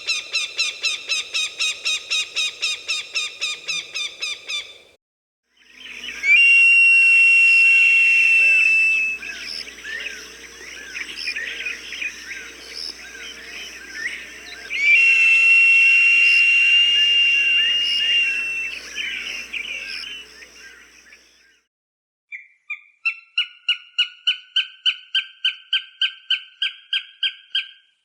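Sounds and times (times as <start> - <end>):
long high whistle: 6.1 - 9.6, 14.5 - 20.0.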